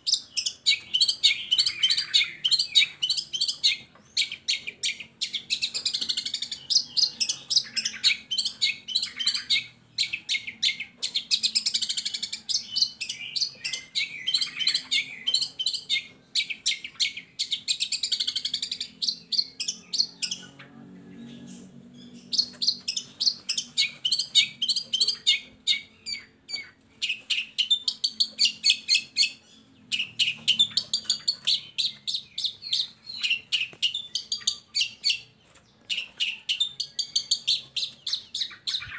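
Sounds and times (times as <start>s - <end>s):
bird chattering song: 0.0s - 38.9s.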